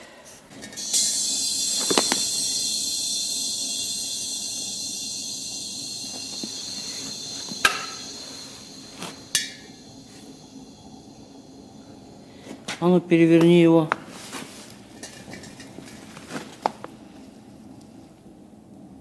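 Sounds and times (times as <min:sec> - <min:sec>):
compressed air hissing: 0:00.6 - 0:12.8.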